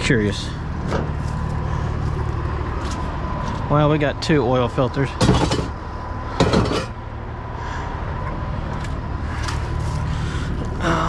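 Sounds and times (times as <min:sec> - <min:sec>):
junk clattering: 0:05.2 - 0:05.8, 0:06.4 - 0:07.0.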